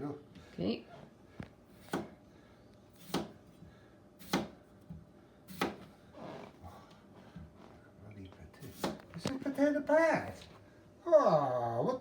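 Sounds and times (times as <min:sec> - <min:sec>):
knife slicing potato on board: 0:01.7 - 0:02.2, 0:02.9 - 0:03.4, 0:04.2 - 0:04.6, 0:05.5 - 0:05.9, 0:08.6 - 0:09.1.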